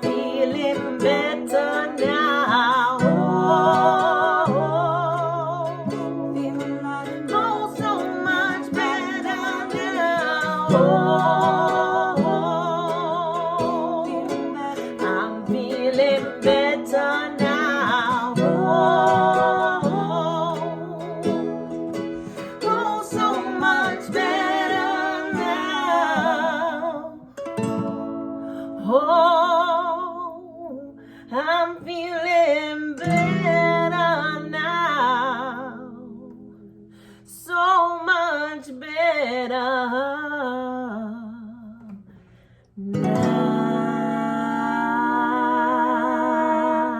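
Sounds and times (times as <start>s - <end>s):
person singing wordless notes: 0.0s - 27.3s, 42.8s - 46.9s
plucked strings: 0.0s - 36.7s, 42.8s - 46.9s.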